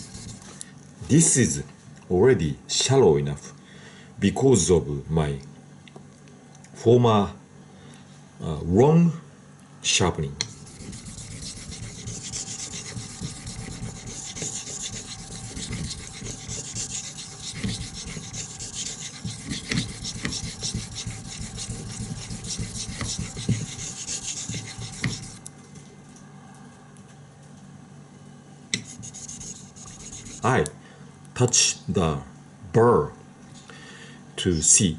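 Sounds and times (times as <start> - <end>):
knife scraping on whetstone: 0.0 - 0.5, 10.5 - 25.4, 28.8 - 30.5.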